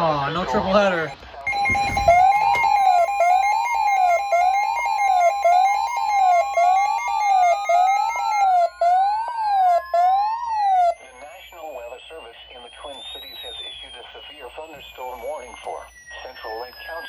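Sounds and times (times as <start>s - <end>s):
steady high alert tone: 0.8s - 17.0s
warbling siren tone: 1.0s - 17.0s
tone rising in pitch: 1.5s - 12.0s.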